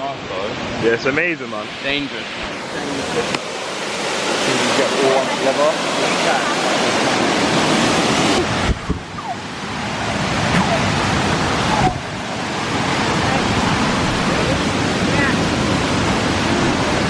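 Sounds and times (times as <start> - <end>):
waterfall rushing: 1.7 - 17.0
brief thump: 8.4 - 9.3.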